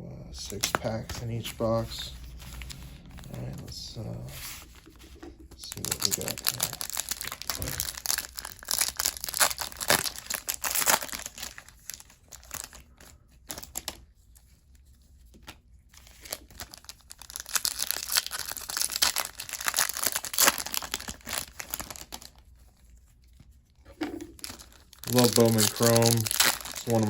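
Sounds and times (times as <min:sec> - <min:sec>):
foil wrappers crinkling and tearing: 0:00.4 - 0:04.0, 0:05.6 - 0:14.0, 0:15.9 - 0:23.4, 0:24.3 - 0:27.0.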